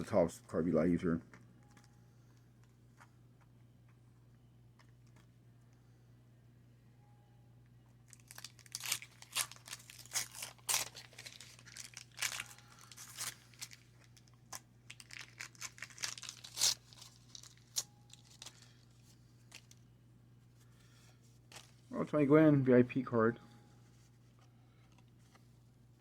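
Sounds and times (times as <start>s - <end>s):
waxed paper wrapper tearing: 8.1s - 18.7s.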